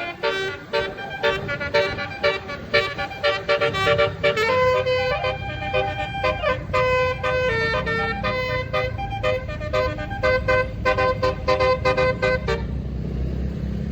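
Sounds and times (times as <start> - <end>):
multi-tone bus horn tune: 0.0 - 13.0
bus engine rumble: 0.0 - 13.9.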